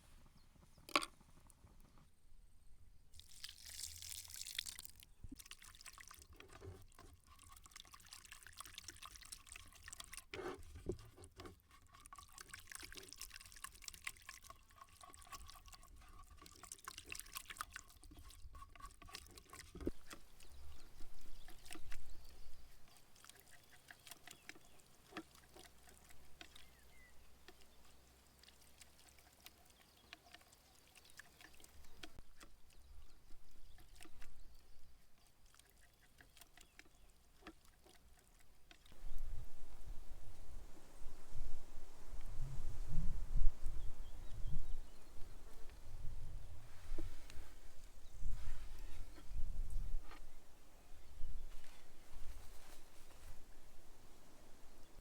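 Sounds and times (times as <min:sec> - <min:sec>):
water pouring and trickling: 0:03.1 - 0:39.5.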